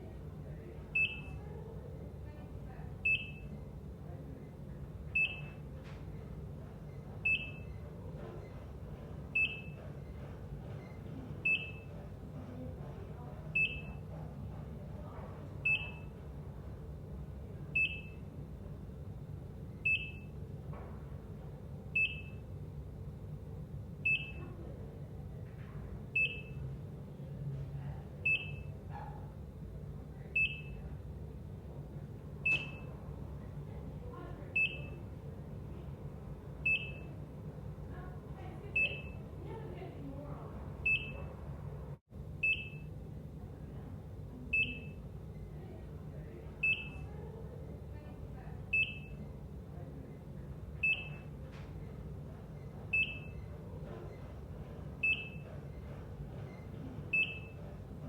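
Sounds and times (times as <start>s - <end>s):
heart monitor beeping: 1.0s - 1.4s, 3.0s - 3.6s, 5.2s - 5.7s, 7.1s - 8.0s, 9.0s - 12.2s, 13.5s - 14.3s, 15.6s - 16.3s, 17.8s - 18.3s, 19.8s - 20.4s, 22.0s - 22.5s, 24.0s - 24.5s, 26.2s - 26.6s, 28.2s - 28.8s, 30.4s - 30.9s, 32.4s - 32.9s, 34.6s - 35.1s, 36.6s - 37.2s, 38.8s - 39.3s, 40.8s - 41.3s, 42.4s - 42.9s, 44.5s - 45.0s, 46.6s - 47.1s, 48.7s - 49.4s, 50.7s - 58.0s.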